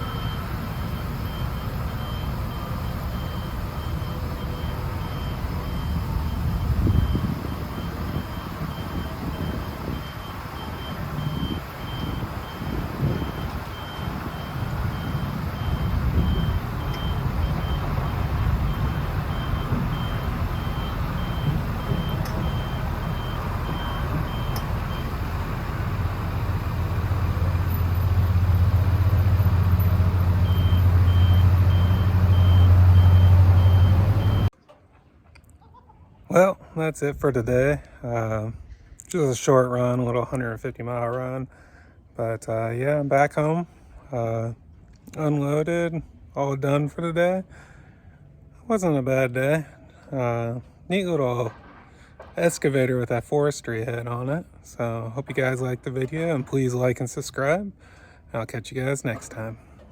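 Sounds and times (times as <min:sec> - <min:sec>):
backup alarm beeping: 0:00.0 - 0:34.5
diesel engine running: 0:00.0 - 0:34.5.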